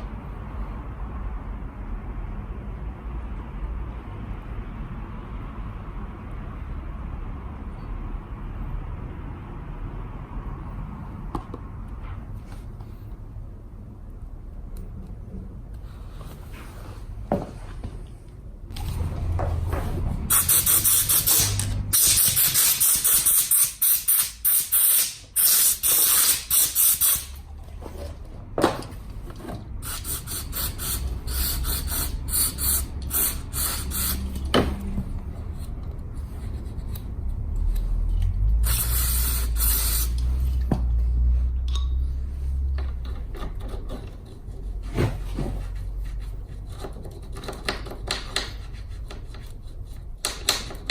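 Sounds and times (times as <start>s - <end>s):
pressurised spray hissing: 20.3s - 27.4s, 29.8s - 34.4s, 38.6s - 40.4s.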